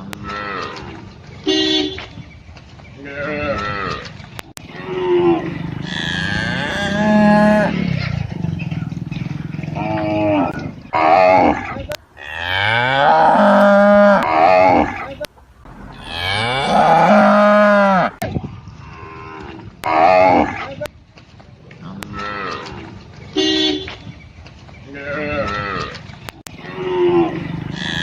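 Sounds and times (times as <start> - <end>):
cattle mooing: 4.6 - 8.2, 9.6 - 18.2, 24.9 - 26.0, 26.6 - 28.0.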